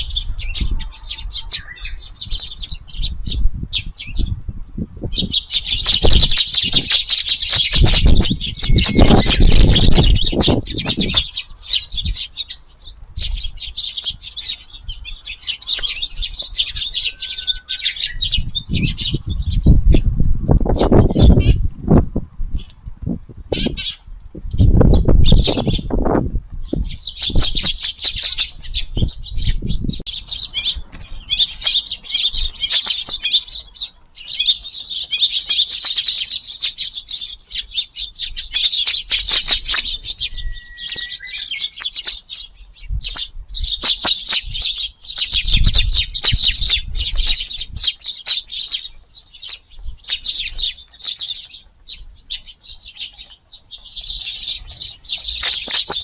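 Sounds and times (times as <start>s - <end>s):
sparrows chirping: 0.0s - 56.0s.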